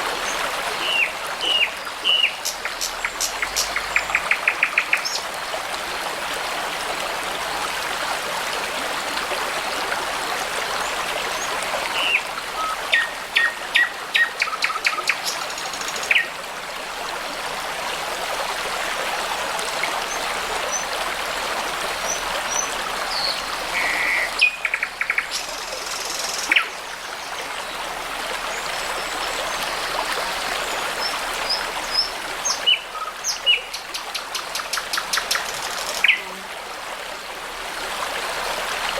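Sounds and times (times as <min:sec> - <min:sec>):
brook babbling: 0:00.0 - 0:38.9
songbirds calling: 0:00.2 - 0:05.3, 0:10.8 - 0:16.4, 0:22.0 - 0:27.8, 0:28.4 - 0:36.4.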